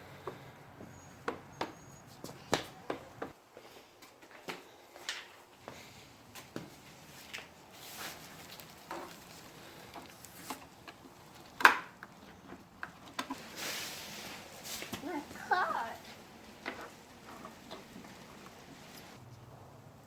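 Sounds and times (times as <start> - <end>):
short hiss: 13.5 - 14.9.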